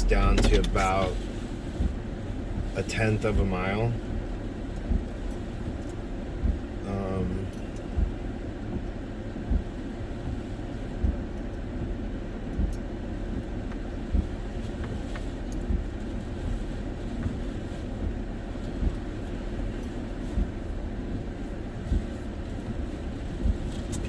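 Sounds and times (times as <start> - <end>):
wind and rain rumble: 0.0 - 24.0.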